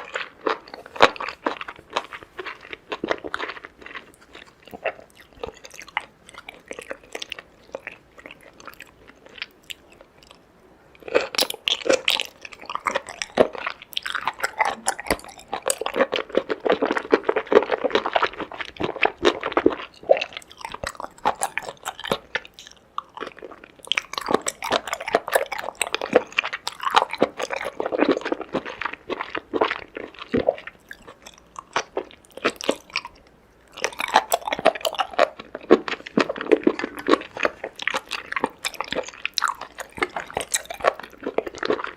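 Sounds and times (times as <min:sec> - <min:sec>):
crunching and wet chewing: 0:00.0 - 0:41.9.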